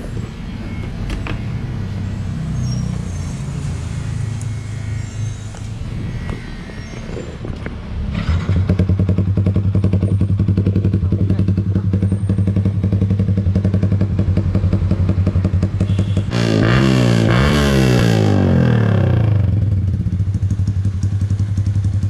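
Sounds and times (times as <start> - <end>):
motorcycle engine idling and revving: 0.0 - 22.0.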